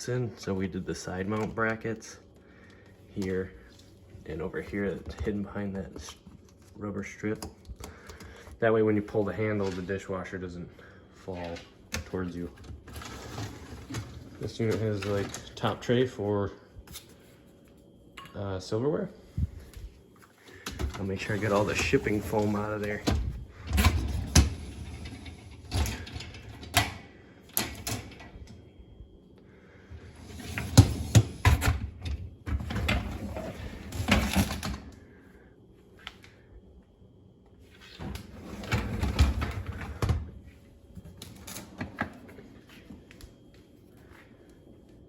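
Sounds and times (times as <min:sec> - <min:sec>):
dishwasher racks clattering: 0:20.8 - 0:26.9.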